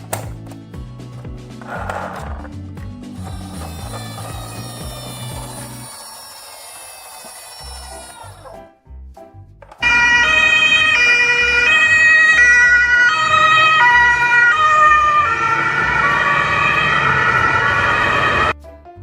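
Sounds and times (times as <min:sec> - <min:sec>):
ambulance two-tone siren: 0:09.8 - 0:18.6.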